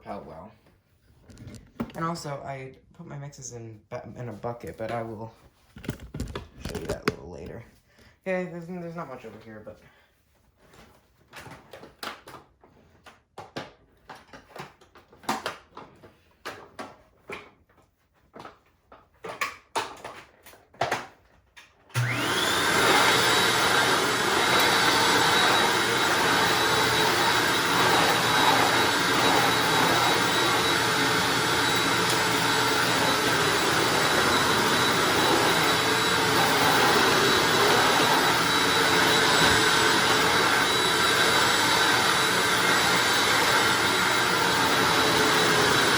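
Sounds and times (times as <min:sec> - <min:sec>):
vacuum cleaner motor whine: 0:21.9 - 0:45.9.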